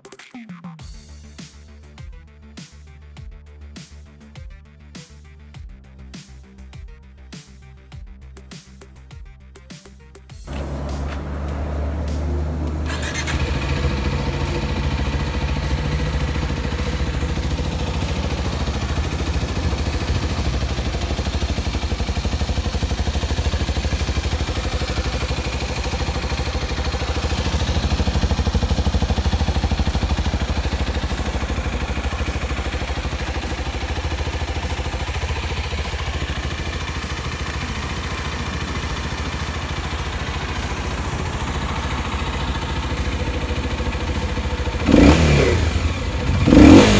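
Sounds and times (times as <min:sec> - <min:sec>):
motorcycle engine idling: 0:10.5 - 0:46.9.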